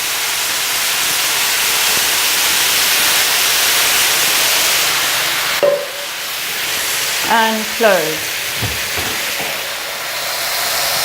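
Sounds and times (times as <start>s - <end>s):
meat sizzling on a grill: 0.0s - 5.6s, 8.3s - 11.0s.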